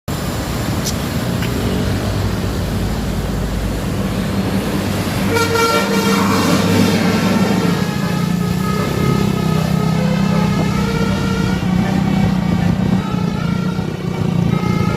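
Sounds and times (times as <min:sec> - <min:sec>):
diesel bus engine rumble: 0:00.1 - 0:14.9
bus horn playing a tune: 0:05.2 - 0:14.9.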